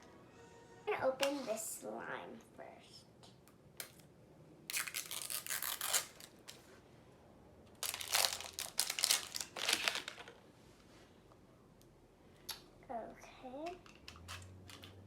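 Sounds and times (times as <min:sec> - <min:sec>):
plastic packaging crinkling: 0:04.7 - 0:06.6, 0:07.7 - 0:10.4.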